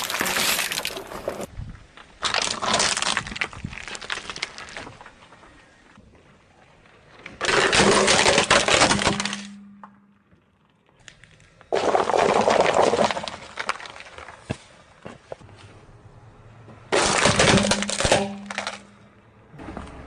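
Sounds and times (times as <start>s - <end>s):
tyre crushing brittle objects: 0.0s - 1.5s, 2.1s - 5.5s, 7.2s - 9.7s, 11.0s - 15.3s, 16.9s - 19.0s.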